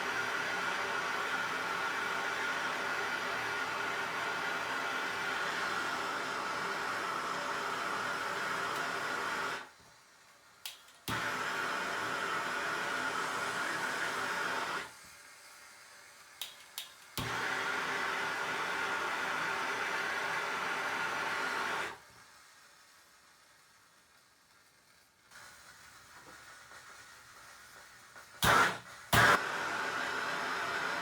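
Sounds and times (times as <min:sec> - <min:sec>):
gas torch hissing: 0:00.0 - 0:23.4, 0:25.2 - 0:31.0
igniter clicks: 0:10.6 - 0:11.2, 0:16.4 - 0:17.4
flame catching with a pop: 0:16.4 - 0:17.4, 0:28.4 - 0:29.4.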